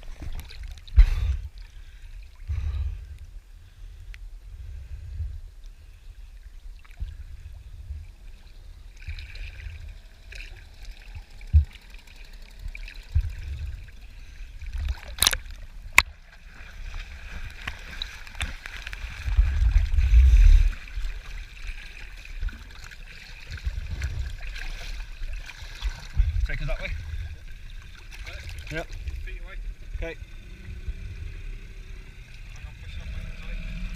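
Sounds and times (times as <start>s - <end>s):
water sloshing along boat hull: 0.0s - 2.7s, 5.9s - 33.5s
wind buffeting microphone: 19.1s - 21.2s.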